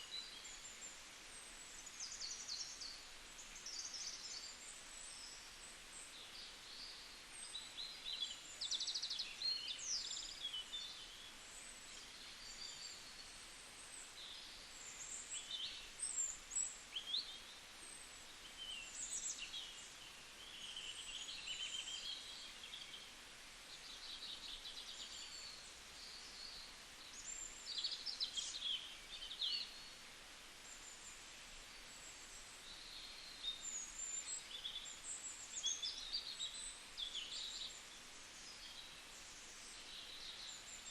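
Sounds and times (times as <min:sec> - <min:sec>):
faint steady hiss: 0:00.0 - 0:40.9
songbirds chirping and singing: 0:32.6 - 0:40.9.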